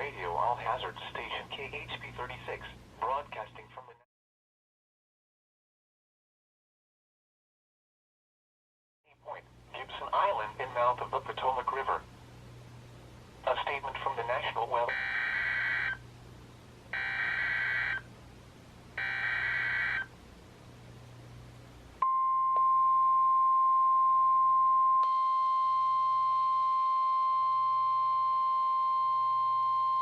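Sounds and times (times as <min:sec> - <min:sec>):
steady alarm tone: 0:14.9 - 0:16.0, 0:16.9 - 0:18.1, 0:19.0 - 0:20.1.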